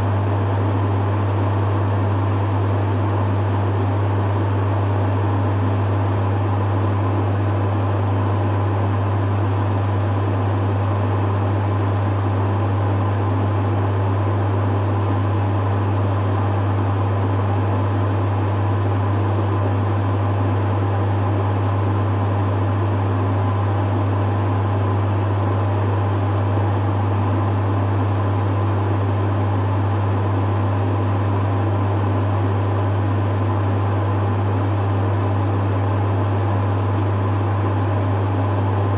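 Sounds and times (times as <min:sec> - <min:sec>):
dehumidifier humming: 0:00.0 - 0:38.9
fan rushing: 0:08.5 - 0:14.5, 0:35.1 - 0:38.9.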